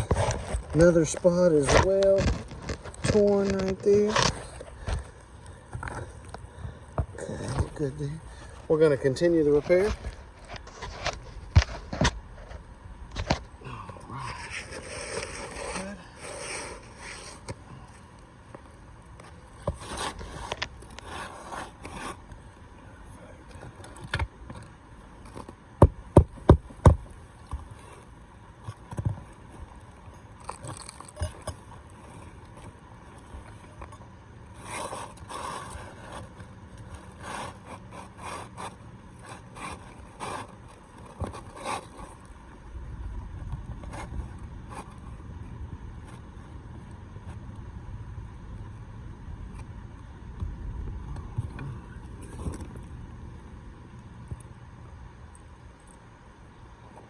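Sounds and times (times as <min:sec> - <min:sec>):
shingles scraping and rustling: 0:00.0 - 0:13.6, 0:14.2 - 0:22.6, 0:23.4 - 0:42.4.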